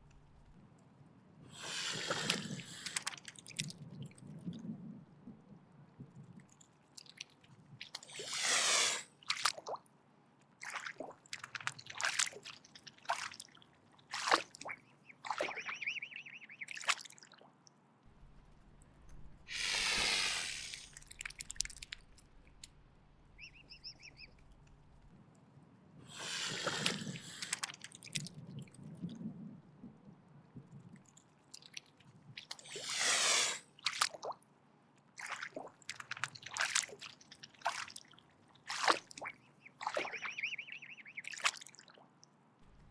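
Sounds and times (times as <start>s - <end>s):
swan hissing: 1.5s - 3.1s, 8.0s - 9.2s, 19.4s - 22.2s, 26.1s - 27.7s, 32.6s - 33.7s.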